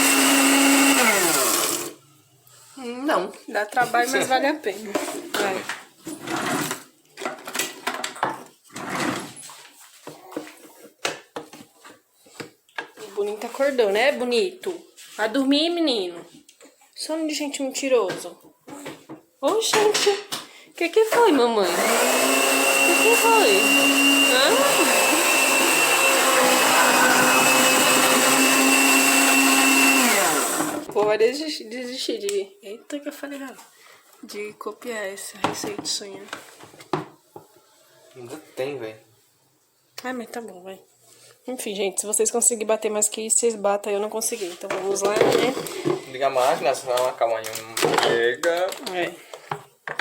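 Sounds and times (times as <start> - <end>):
electric blender running: 0.0 - 2.0, 21.2 - 30.9
person speaking: 20.9 - 28.9.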